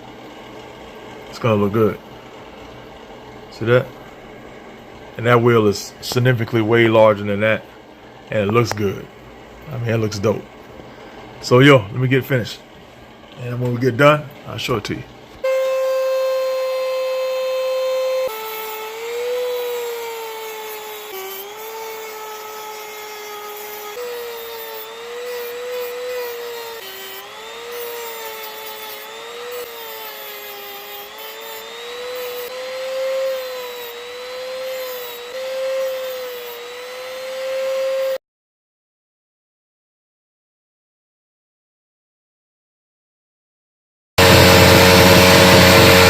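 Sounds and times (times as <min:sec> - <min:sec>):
power tool whining cutting metal: 0:15.4 - 0:38.2, 0:44.2 - 0:46.0.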